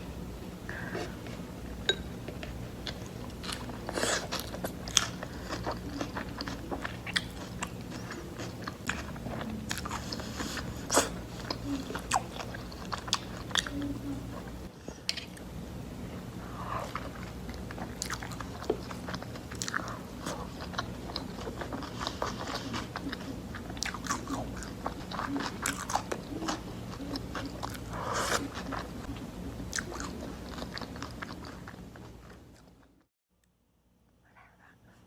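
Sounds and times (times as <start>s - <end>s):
faint steady hum: 0.0s - 35.0s
chewing crunchy food: 2.3s - 15.5s, 16.6s - 33.0s.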